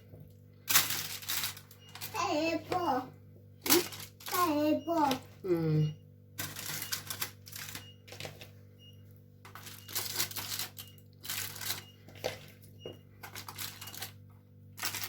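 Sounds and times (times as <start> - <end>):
aluminium foil crinkling: 0.6 - 2.2, 3.6 - 4.5, 6.4 - 7.8, 9.5 - 14.2, 14.8 - 15.0.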